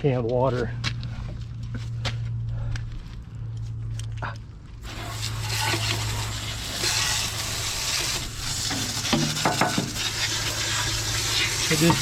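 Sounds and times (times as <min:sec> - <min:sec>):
steady low hum: 0:00.0 - 0:11.7
hose water spraying on metal: 0:04.8 - 0:12.0.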